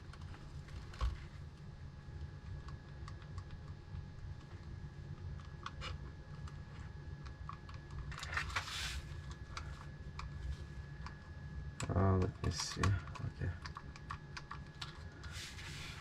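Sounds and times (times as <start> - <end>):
steady low hum: 0.0 - 16.0
scraping rustle: 8.3 - 9.1, 15.3 - 16.0.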